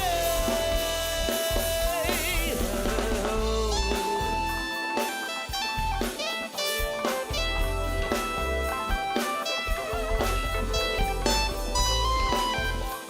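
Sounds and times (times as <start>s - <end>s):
low bass: 0.0s - 4.6s, 5.6s - 6.2s, 7.3s - 8.9s, 9.8s - 12.9s
drums: 0.0s - 13.0s
electric guitar line: 0.0s - 13.0s.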